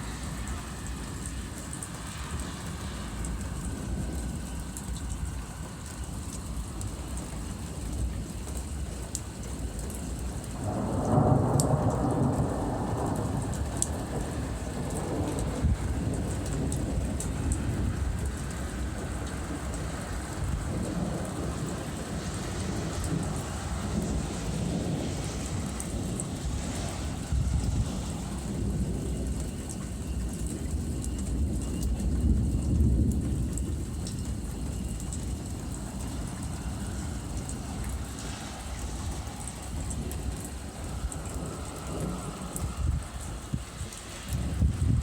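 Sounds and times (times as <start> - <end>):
steady rain: 0.0 - 45.0
thunder rumbling: 10.4 - 45.0.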